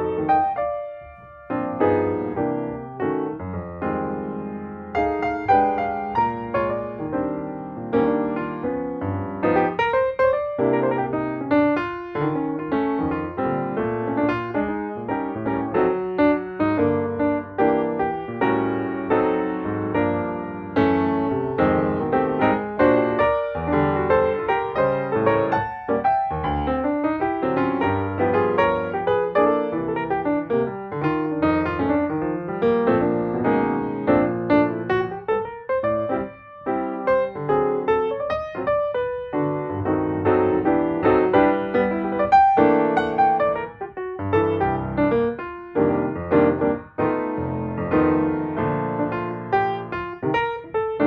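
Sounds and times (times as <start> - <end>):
background piano music: 0.0 - 51.0.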